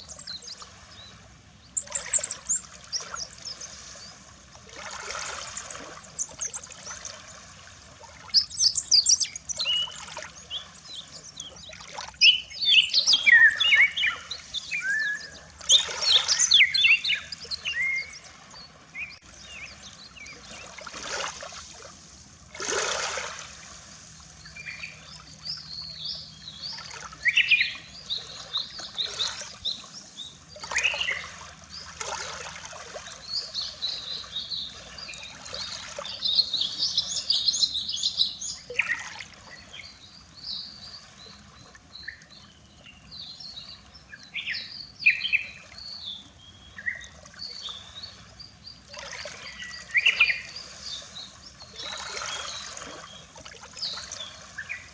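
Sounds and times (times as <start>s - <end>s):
small birds chirping: 0.0s - 20.6s
waves lapping on shore: 0.0s - 54.9s.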